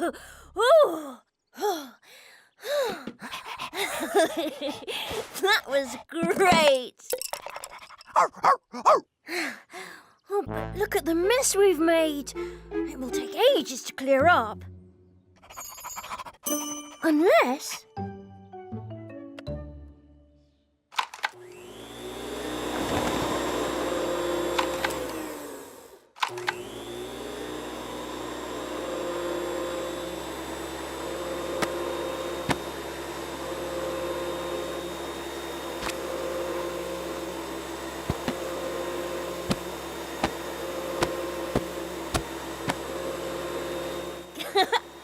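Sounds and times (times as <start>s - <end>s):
electric motor whirring: 21.4s - 45.0s.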